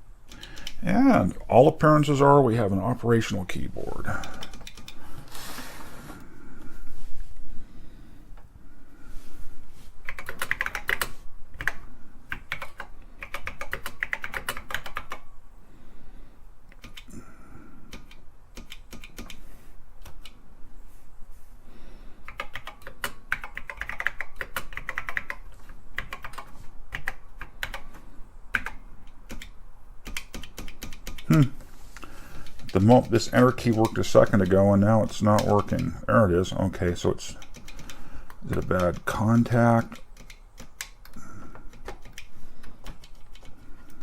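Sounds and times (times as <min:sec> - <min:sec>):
keyboard key clicks: 0:04.2 - 0:05.0.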